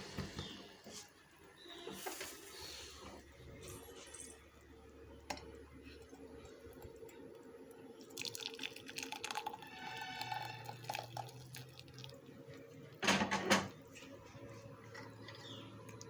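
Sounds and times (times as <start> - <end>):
tea pouring and dripping: 3.5 - 12.9.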